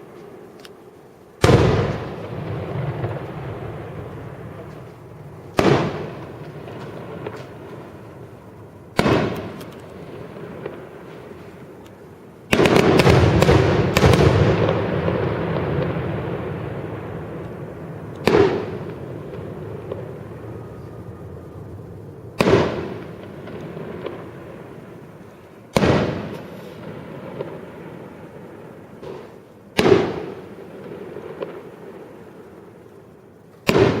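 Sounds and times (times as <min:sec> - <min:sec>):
crackling fireworks: 0:00.0 - 0:34.0
fireworks bangs: 0:00.0 - 0:34.0
rumbling echo: 0:01.1 - 0:34.0
firework pop and crack: 0:29.0 - 0:30.3.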